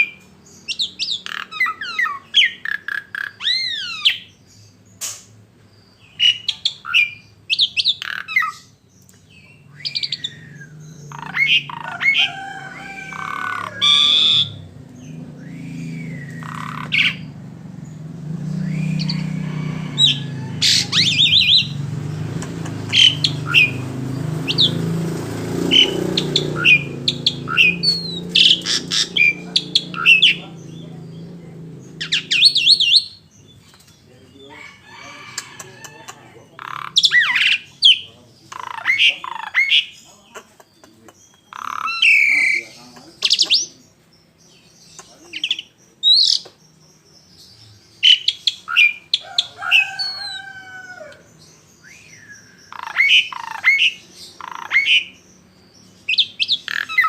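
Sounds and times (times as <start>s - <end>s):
songbirds singing: 0.0s - 57.0s.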